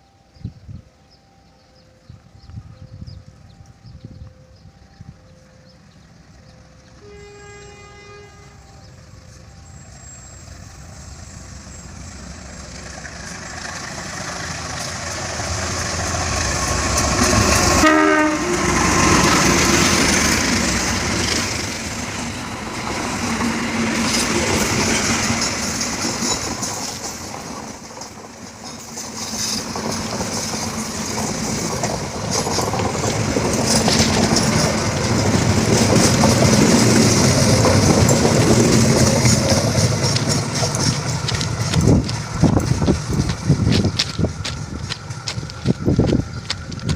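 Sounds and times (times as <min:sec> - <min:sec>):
train rumble and wheel clatter: 0:00.0 - 0:46.9
train horn blast: 0:07.0 - 0:09.0, 0:17.5 - 0:19.4.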